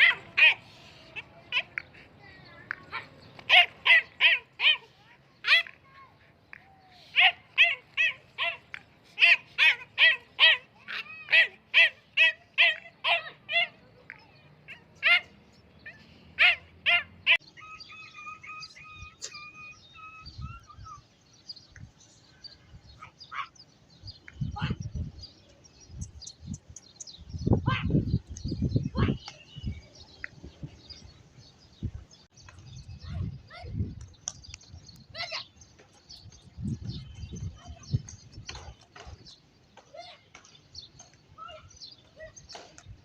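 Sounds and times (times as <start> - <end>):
small dog yapping: 0.0 - 0.6.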